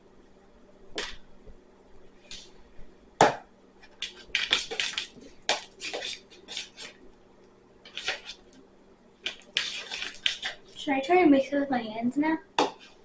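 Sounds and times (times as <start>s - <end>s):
spoon scraping a bowl: 3.9s - 7.0s, 7.9s - 8.5s, 9.2s - 10.8s.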